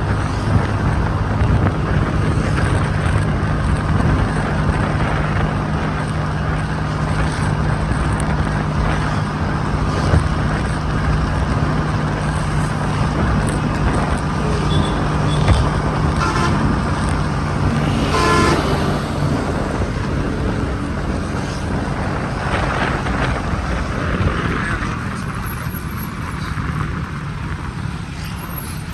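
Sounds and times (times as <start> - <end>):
scooter engine hum: 0.0 - 28.9
wind rushing over microphone: 0.0 - 28.9
vehicle horn: 14.3 - 21.0.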